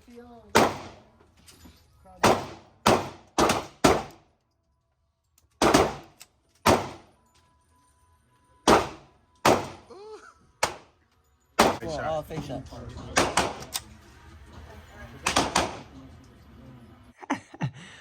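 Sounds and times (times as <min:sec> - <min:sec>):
handgun shots echoing: 0:00.5 - 0:01.1, 0:02.2 - 0:04.2, 0:05.6 - 0:07.1, 0:08.7 - 0:09.9, 0:10.6 - 0:10.9, 0:11.6 - 0:11.8, 0:13.2 - 0:13.9, 0:15.2 - 0:15.9.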